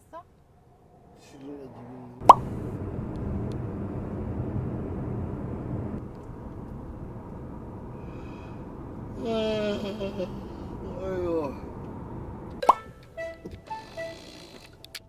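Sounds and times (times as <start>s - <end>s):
vehicle engine and road rumble: 0.0s - 15.0s.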